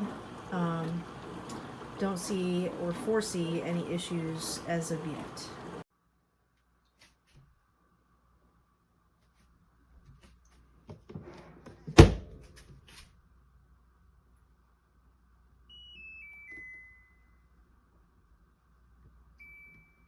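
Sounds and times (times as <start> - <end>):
dishwasher door shutting: 11.9 - 12.4.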